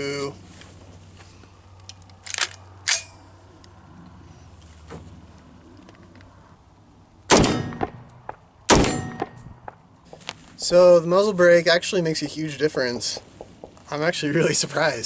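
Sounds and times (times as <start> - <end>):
rifle shots with ringing tail: 7.3 - 9.6.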